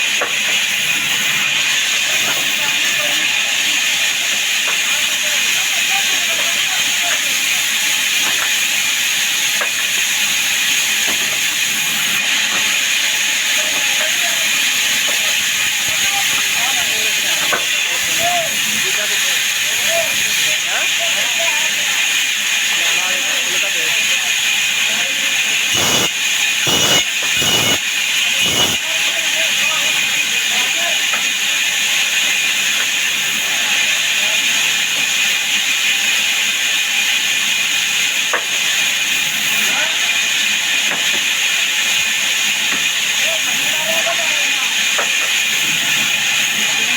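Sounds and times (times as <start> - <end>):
power saw cutting wood: 25.7 - 26.1, 26.7 - 27.8, 28.4 - 28.8.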